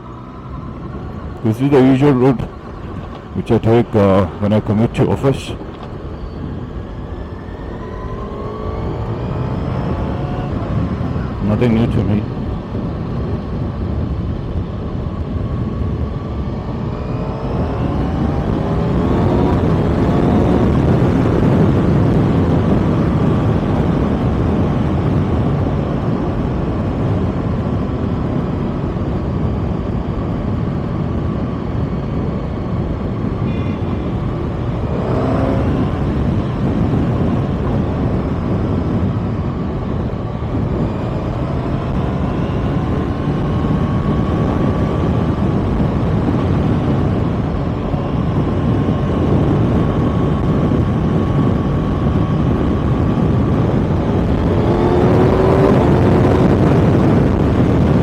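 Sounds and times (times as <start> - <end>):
motorcycle engine at speed: 0.0 - 58.0
wind noise on microphone: 0.0 - 58.0.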